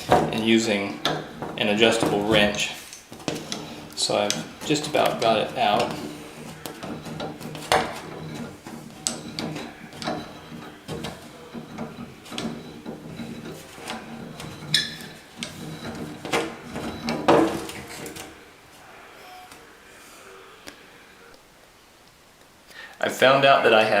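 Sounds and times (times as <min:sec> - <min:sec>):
wrench clicking and scraping metal: 0:01.0 - 0:18.2.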